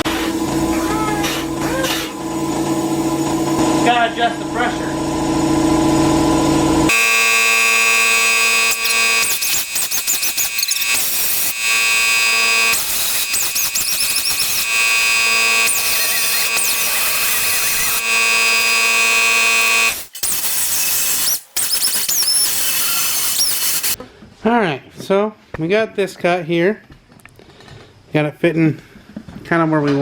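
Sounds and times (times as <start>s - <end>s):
pneumatic cutoff wheel whining: 6.9s - 24.0s.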